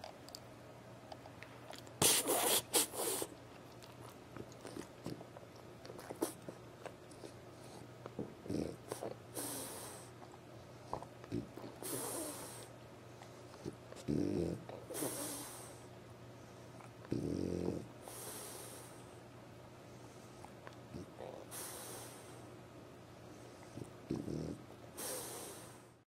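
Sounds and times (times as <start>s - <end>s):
dog snoring: 8.4s - 10.1s, 10.8s - 12.7s, 13.6s - 15.8s, 17.0s - 19.1s, 20.9s - 22.4s, 23.4s - 25.9s.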